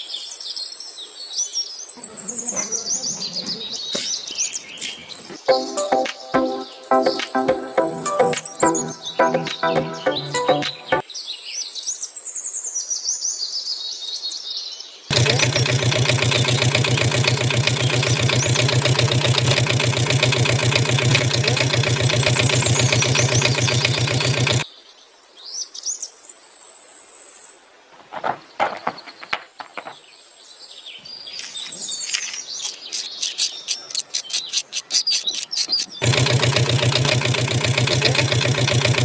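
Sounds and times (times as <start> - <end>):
birds chirping: 2.0 - 5.4, 15.1 - 24.6, 28.0 - 39.0
loud machine running: 15.1 - 24.6, 34.5 - 39.0.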